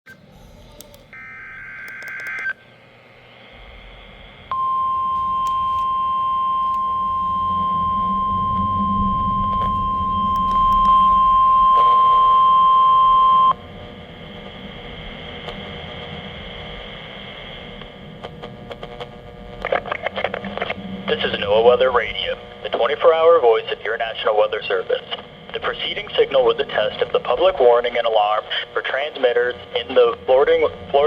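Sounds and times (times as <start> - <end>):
radio hiss: 1.1 - 6.8, 9.6 - 31.0
steady alarm tone: 4.4 - 14.8.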